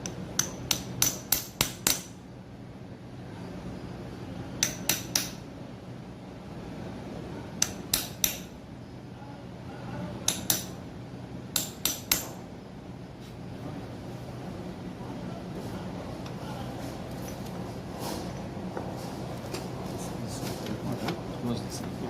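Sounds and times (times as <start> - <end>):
hammer striking metal: 0.0 - 2.2, 4.6 - 5.4, 7.6 - 8.6, 10.2 - 10.8, 11.5 - 12.4
steady low hum: 0.0 - 22.0.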